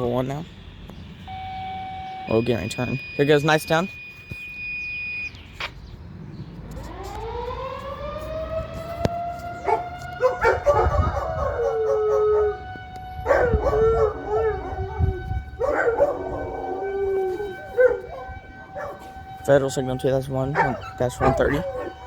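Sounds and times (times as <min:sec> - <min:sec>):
warning siren wailing: 0:00.0 - 0:05.6, 0:06.5 - 0:22.0
dogs howling: 0:09.6 - 0:19.3, 0:20.4 - 0:22.0.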